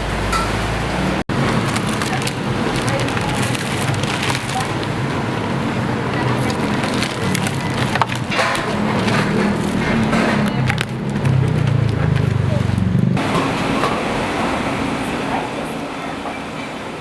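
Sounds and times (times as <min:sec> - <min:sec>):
steady background hum: 0:01.2 - 0:17.0
utensils knocking and clicking: 0:06.1 - 0:13.1.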